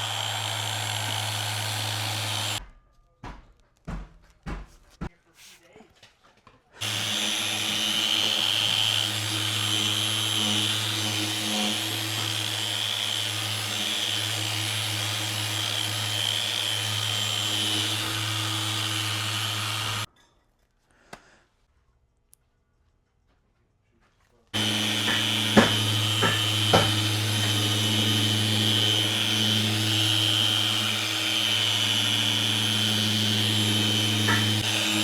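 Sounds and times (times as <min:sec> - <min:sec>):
electric power tool whining: 0:00.0 - 0:02.6, 0:06.8 - 0:20.1, 0:24.6 - 0:35.0.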